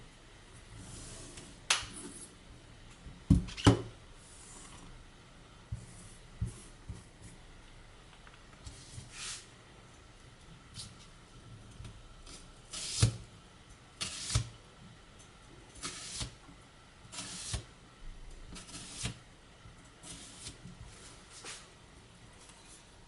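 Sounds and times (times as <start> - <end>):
knife slicing onion: 12.7 - 13.2, 14.0 - 14.5, 15.8 - 16.4, 17.1 - 17.7, 18.6 - 19.2.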